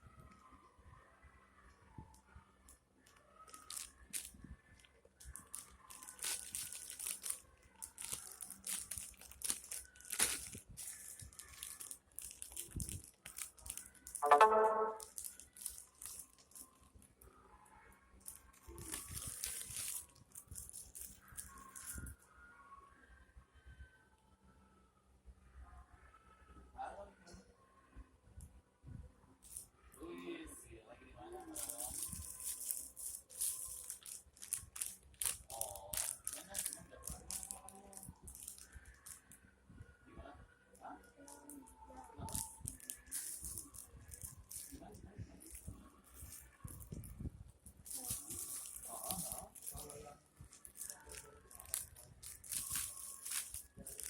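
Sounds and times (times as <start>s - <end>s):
plastic crinkling and rustling: 3.0s - 17.1s, 18.2s - 22.2s, 29.4s - 29.7s, 31.4s - 39.4s, 41.1s - 54.0s
brief loud pitched sound: 14.2s - 15.0s.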